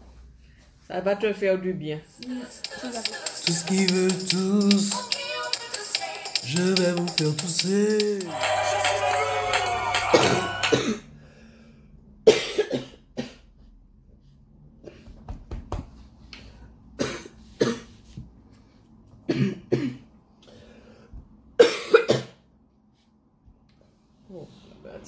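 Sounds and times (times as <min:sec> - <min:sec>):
person coughing: 0:10.1 - 0:11.0, 0:12.3 - 0:13.4, 0:17.0 - 0:17.9, 0:19.3 - 0:20.1, 0:21.6 - 0:22.4.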